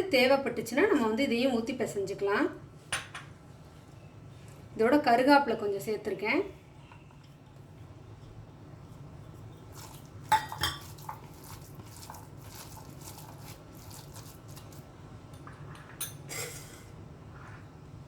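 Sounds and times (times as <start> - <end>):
utensils clinking against a bowl: 9.8 - 14.8.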